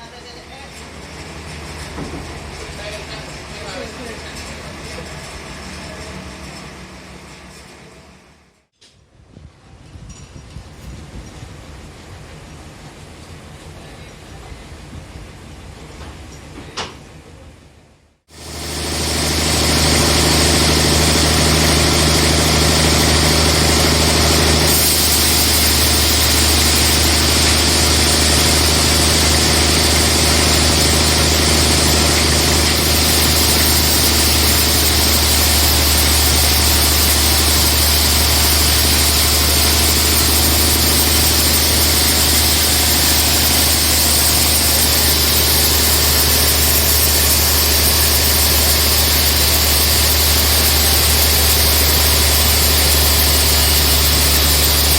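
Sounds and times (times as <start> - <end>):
sawmill machinery droning: 18.3 - 54.9.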